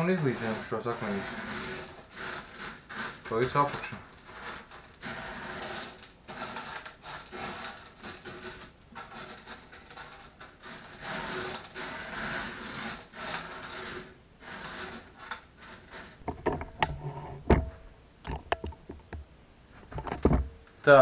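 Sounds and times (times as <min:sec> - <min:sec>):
gravel rustling and scraping: 0:00.0 - 0:17.5
sharp clicks and knocks: 0:16.2 - 0:20.8.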